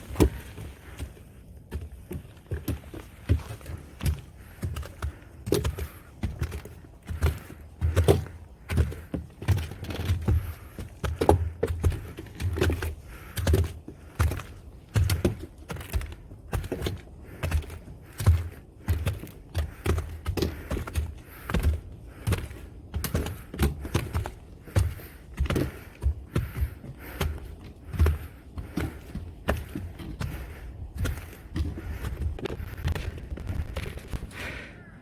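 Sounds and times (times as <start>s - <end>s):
footsteps crunching in snow: 24.6s - 34.3s.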